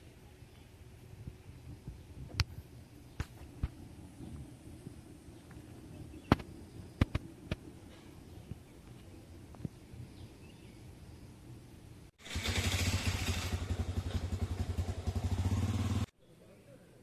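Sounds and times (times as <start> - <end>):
motorcycle engine running: 12.2 - 16.1.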